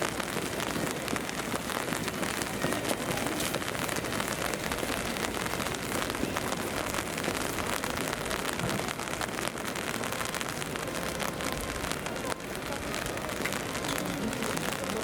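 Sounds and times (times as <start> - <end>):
heavy rain falling: 0.0 - 15.0.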